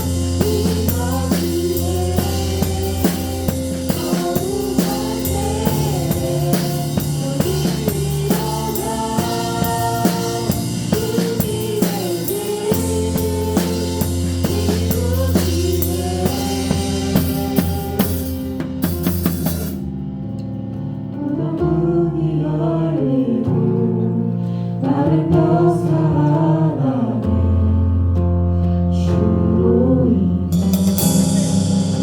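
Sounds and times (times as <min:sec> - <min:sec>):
person singing: 0:00.0 - 0:18.6
drum kit beat: 0:00.0 - 0:19.8, 0:30.5 - 0:32.0
bass: 0:00.0 - 0:32.0
keyboard chords: 0:00.0 - 0:32.0.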